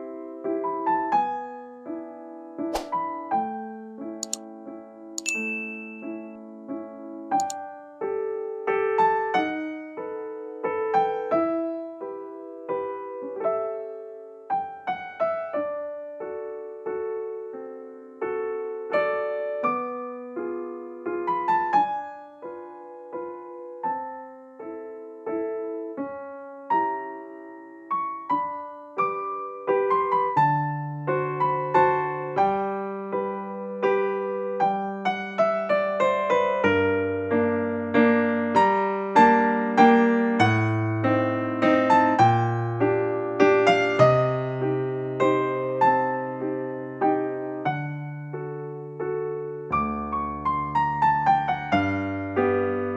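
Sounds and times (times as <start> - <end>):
slow solo piano melody: 2.8 - 52.9.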